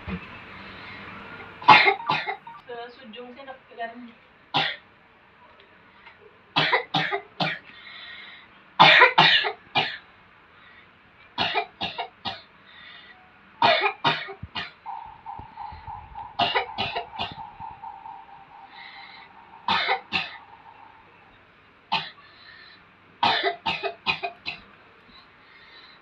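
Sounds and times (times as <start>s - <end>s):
steady hum: 0.0s - 2.6s, 14.8s - 22.1s.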